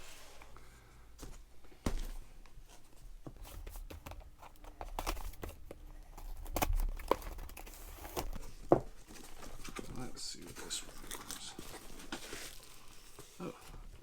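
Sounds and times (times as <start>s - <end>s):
packaging clicks and taps: 3.4s - 8.2s.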